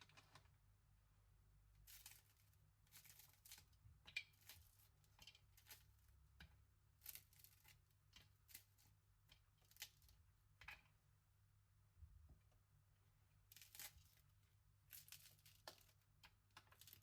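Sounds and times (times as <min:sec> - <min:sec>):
faint rustling and scraping: 0:01.8 - 0:11.1.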